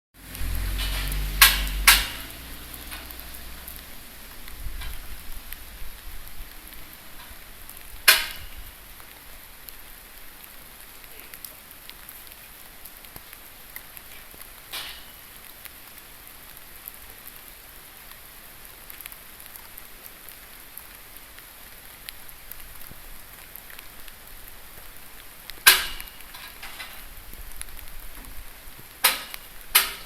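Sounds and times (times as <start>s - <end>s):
low rumble: 0.2s - 6.7s
steady hiss: 0.2s - 30.0s
metal scaffolding clanks: 0.4s - 3.4s, 8.0s - 8.6s, 14.7s - 15.1s, 25.6s - 27.0s, 29.0s - 30.0s.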